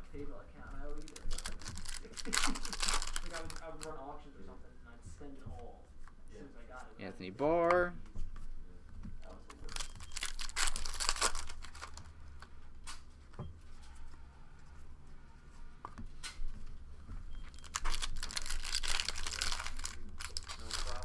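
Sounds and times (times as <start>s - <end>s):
foil wrapper tearing and crinkling: 0.9s - 3.9s, 9.6s - 12.0s, 17.6s - 21.0s.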